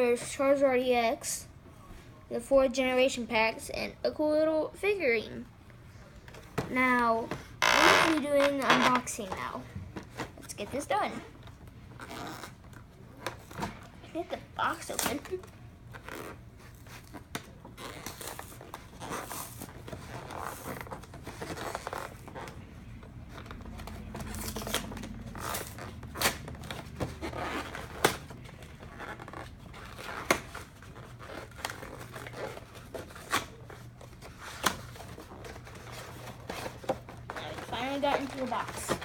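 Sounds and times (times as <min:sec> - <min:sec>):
cardboard box tape tearing: 0:15.9 - 0:22.6, 0:23.8 - 0:33.8.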